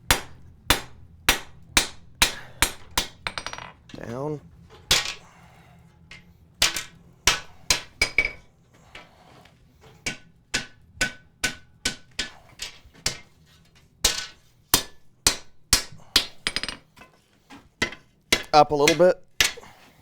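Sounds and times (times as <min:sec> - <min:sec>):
hammer striking steel on anvil: 0:00.0 - 0:03.7, 0:06.6 - 0:08.4, 0:10.0 - 0:13.3, 0:14.0 - 0:16.8, 0:17.8 - 0:19.7.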